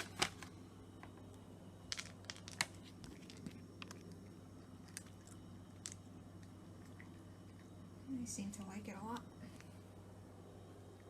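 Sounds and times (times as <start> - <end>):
treat bag clicks and crinkles: 0.0 - 0.5, 1.9 - 6.5
low steady hum: 0.0 - 11.0.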